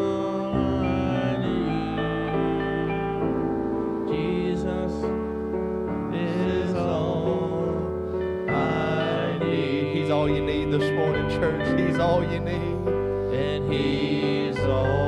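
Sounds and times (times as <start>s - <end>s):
band playing slow gospel song: 0.0s - 15.0s.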